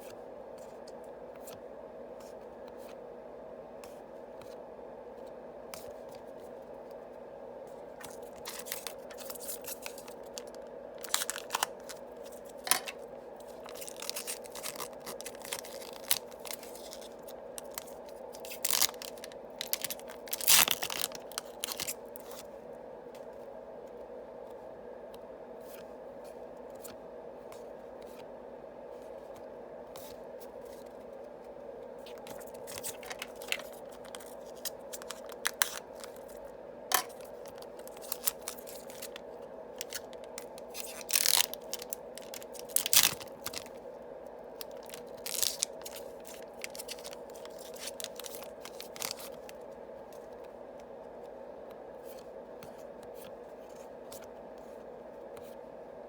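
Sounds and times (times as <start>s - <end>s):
steady low hum: 0.0s - 56.0s
foil packs tearing and rustling: 8.0s - 22.4s, 32.2s - 39.2s, 39.8s - 43.8s, 44.6s - 49.6s.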